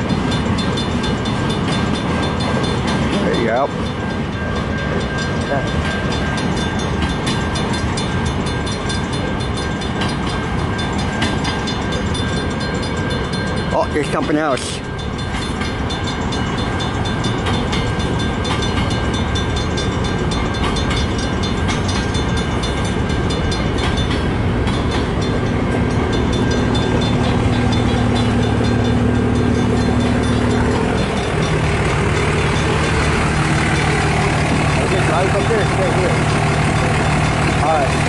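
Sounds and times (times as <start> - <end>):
train wheels rumbling on rails: 0.0 - 38.0
low engine drone: 24.4 - 38.0.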